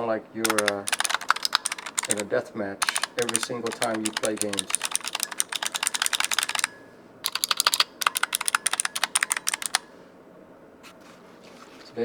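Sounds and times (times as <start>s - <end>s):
clicky keyboard typing: 0.4s - 9.9s.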